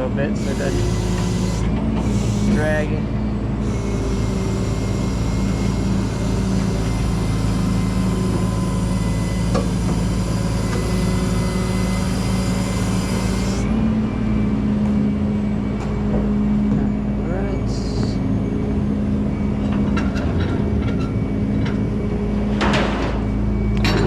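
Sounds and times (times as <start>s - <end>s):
faint whine: 0.0s - 22.6s
truck engine hum: 0.0s - 22.6s
hydraulic hiss: 0.3s - 2.7s, 3.6s - 13.6s.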